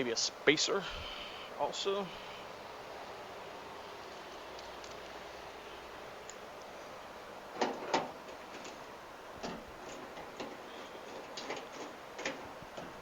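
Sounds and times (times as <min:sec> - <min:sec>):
hand tools clicking and tapping: 0:09.4 - 0:13.0.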